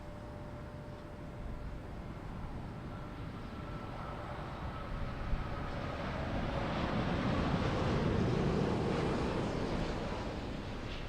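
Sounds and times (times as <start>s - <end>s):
faint steady engine whine: 0.0s - 11.0s
jet airliner roar: 1.4s - 11.0s.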